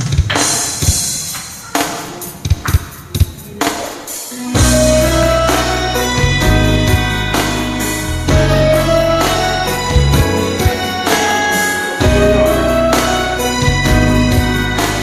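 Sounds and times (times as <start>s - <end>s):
steady bass and held chords: 4.6s - 15.0s.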